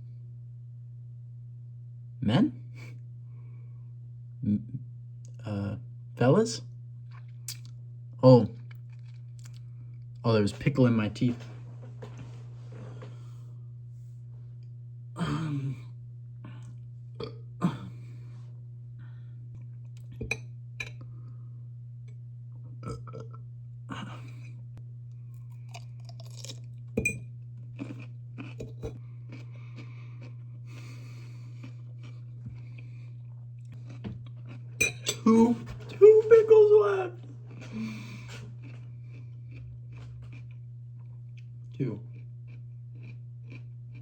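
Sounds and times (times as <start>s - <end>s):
steady low hum: 0.0s - 44.0s
person chewing and crunching pickle: 7.0s - 7.8s, 8.5s - 10.2s, 25.3s - 35.9s, 36.8s - 44.0s.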